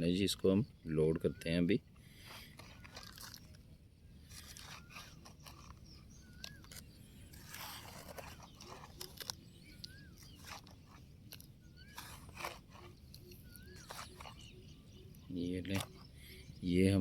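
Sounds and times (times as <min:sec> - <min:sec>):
toy vehicles scraping and tapping: 0:02.0 - 0:03.6, 0:04.2 - 0:16.1.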